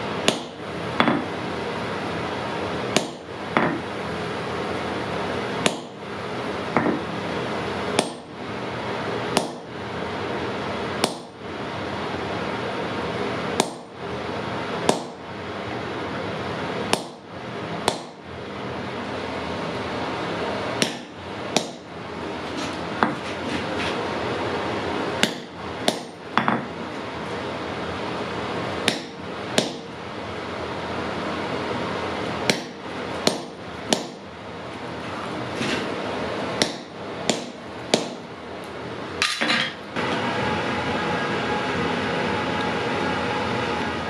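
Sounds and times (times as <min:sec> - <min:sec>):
hammer striking metal on anvil: 0:00.2 - 0:01.3, 0:08.0 - 0:08.3, 0:11.0 - 0:11.4, 0:13.6 - 0:13.9, 0:14.9 - 0:15.2, 0:16.9 - 0:17.2, 0:20.8 - 0:21.8, 0:28.8 - 0:29.9, 0:32.5 - 0:34.2, 0:36.6 - 0:38.2.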